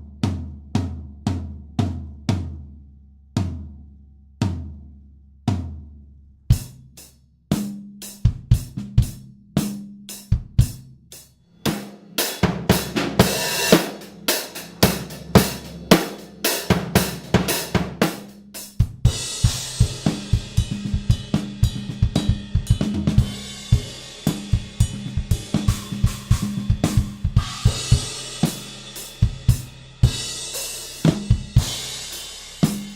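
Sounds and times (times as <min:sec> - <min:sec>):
fast drum strokes: 0:06.5 - 0:32.9
steady cymbals: 0:06.6 - 0:32.9
cymbal crashes: 0:11.6 - 0:21.2, 0:23.2 - 0:32.9.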